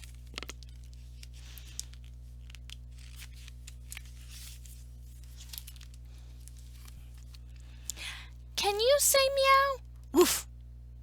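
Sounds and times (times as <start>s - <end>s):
paper rustling: 0.0s - 7.4s
light clicks of pages turned: 0.0s - 8.0s
steady low hum: 0.0s - 11.0s.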